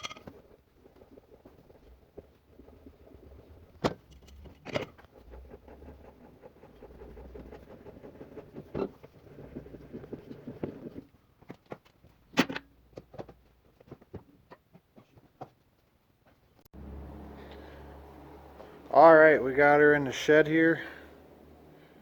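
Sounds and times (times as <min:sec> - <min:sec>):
tractor engine rumbling: 0:16.8 - 0:22.0.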